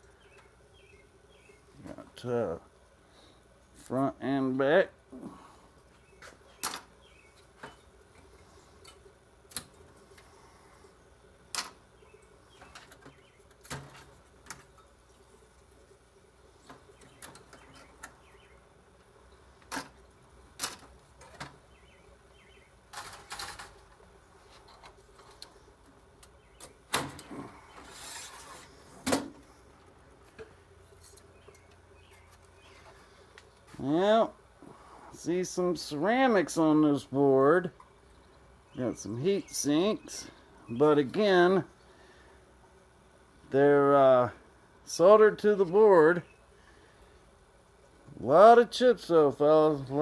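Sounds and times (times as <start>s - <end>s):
short scraping: 27.3s - 29.0s.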